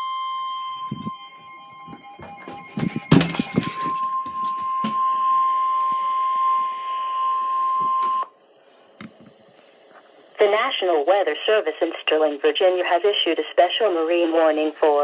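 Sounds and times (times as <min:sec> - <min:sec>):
door being kicked: 0:01.7 - 0:05.0.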